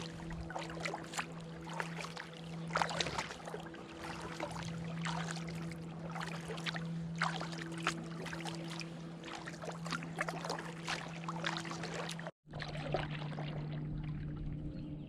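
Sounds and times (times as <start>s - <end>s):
paddle splashes: 0.0s - 14.7s
water splashing around kayak: 0.0s - 15.0s.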